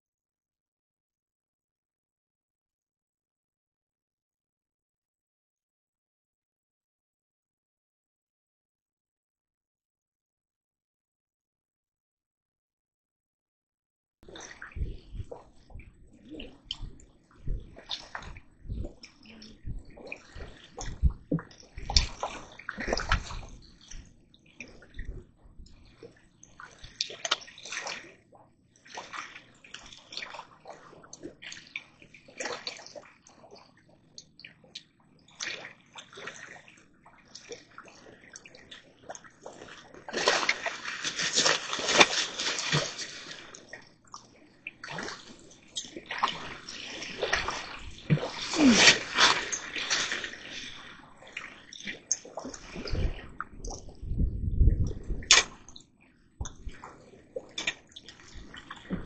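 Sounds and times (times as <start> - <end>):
water splashing and sloshing: 14.2 - 59.0.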